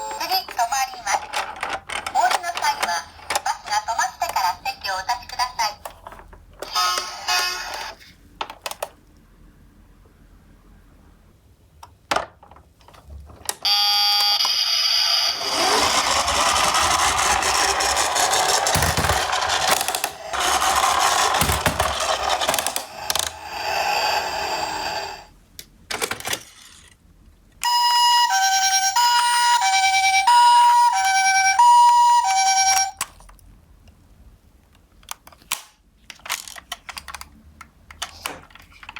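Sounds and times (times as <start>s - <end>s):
loud rattling rolling noise: 15.4s - 25.2s
two-tone ambulance siren: 27.7s - 33.0s.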